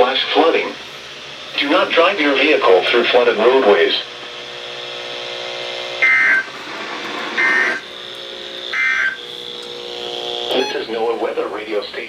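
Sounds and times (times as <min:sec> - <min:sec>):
steady hum: 0:00.0 - 0:12.0
two-tone digital data bursts: 0:05.9 - 0:06.7, 0:07.4 - 0:11.7.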